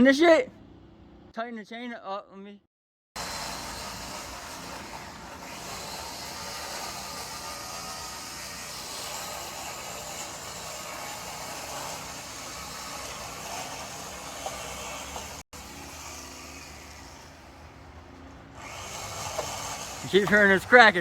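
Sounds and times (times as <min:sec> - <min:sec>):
faint chainsaw engine running: 0:18.6 - 0:21.0.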